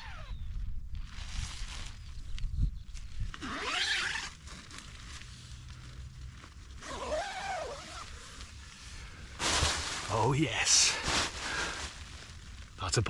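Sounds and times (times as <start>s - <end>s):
straps rasping through buckles: 3.4s - 4.3s.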